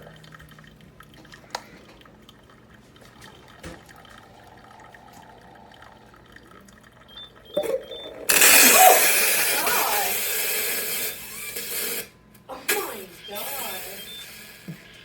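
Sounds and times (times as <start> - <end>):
coffee trickling and dripping: 0.0 - 12.5.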